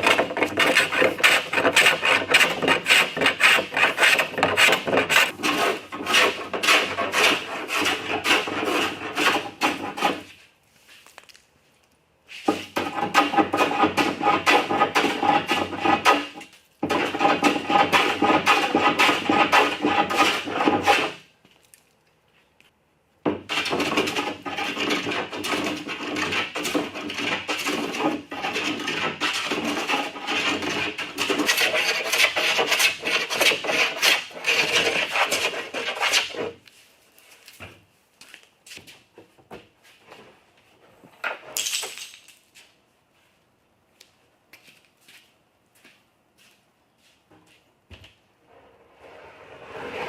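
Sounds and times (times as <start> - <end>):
hand tool scraping wood: 0.0 - 11.0, 12.3 - 21.3, 23.3 - 36.7, 48.5 - 50.0.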